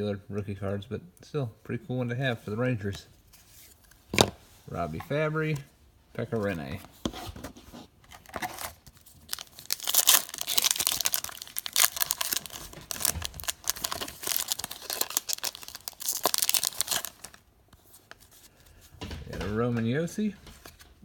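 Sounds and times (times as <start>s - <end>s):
foil wrapper tearing and crinkling: 8.2s - 17.4s.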